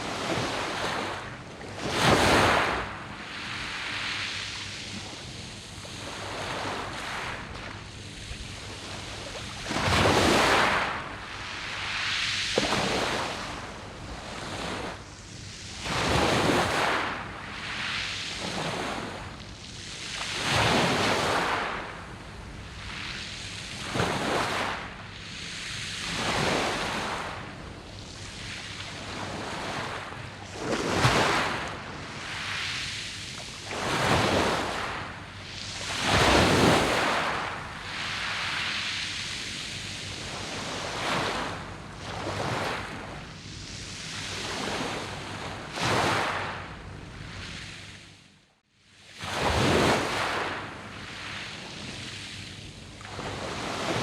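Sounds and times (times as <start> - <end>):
waves breaking on pebbles: 6.0 - 13.7, 28.2 - 32.9, 33.5 - 41.5, 49.2 - 51.6.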